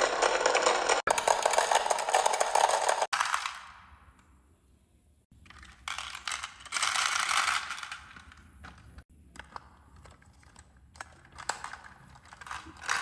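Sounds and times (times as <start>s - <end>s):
marbles rattling down a track: 0.0s - 3.7s, 5.6s - 8.3s, 11.4s - 13.0s.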